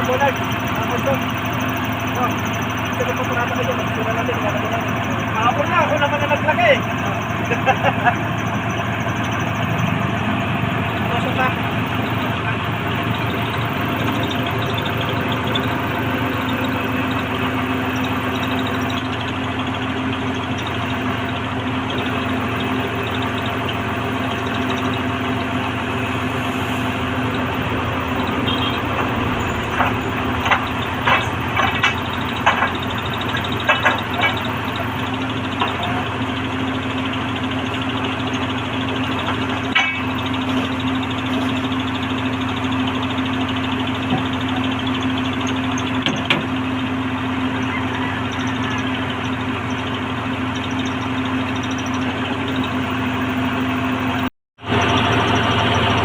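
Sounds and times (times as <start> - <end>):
diesel engine under load: 0.0 - 56.0.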